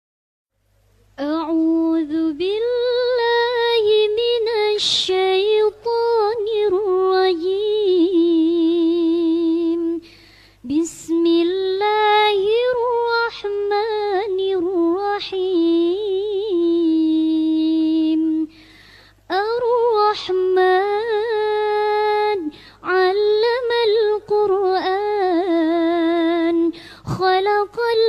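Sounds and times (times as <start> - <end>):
girl reciting melodically: 1.2 - 18.6, 19.3 - 28.0.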